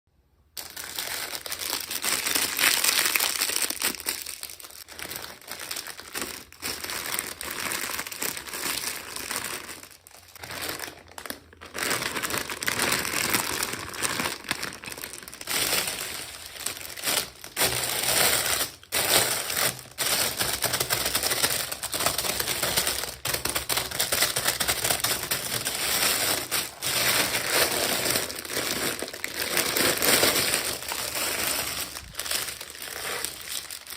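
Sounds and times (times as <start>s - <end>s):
packaging crinkling: 0.6s - 33.9s.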